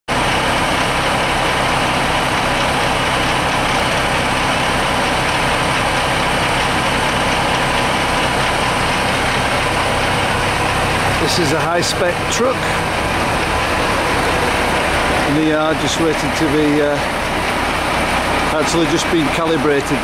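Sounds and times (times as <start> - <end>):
truck engine running: 0.1 - 20.0.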